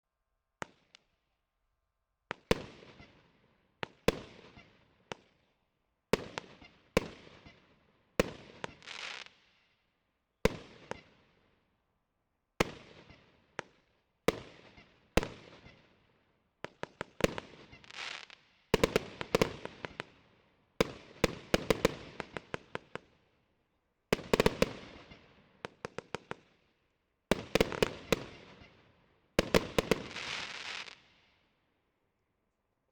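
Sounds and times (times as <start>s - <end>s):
fireworks bangs and crackle: 8.2s - 9.4s, 12.6s - 15.8s, 16.7s - 23.1s, 24.1s - 26.5s, 27.3s - 31.2s.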